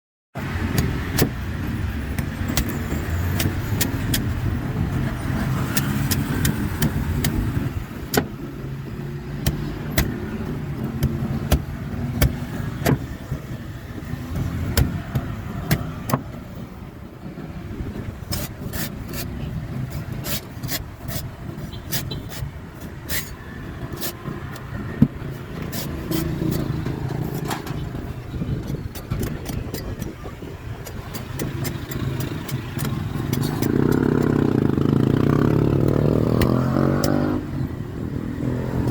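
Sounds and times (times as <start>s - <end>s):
vehicle engine rumbling: 0.4s - 38.9s
blade chopping coconut husk: 9.0s - 13.0s, 14.3s - 16.2s, 35.8s - 37.4s.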